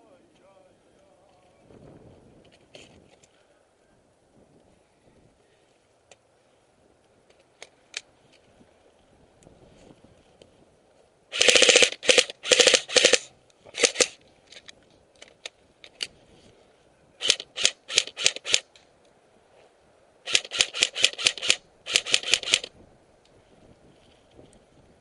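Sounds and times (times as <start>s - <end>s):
airsoft gun rapid shots: 11.3s - 14.2s, 17.2s - 18.6s, 20.3s - 22.7s.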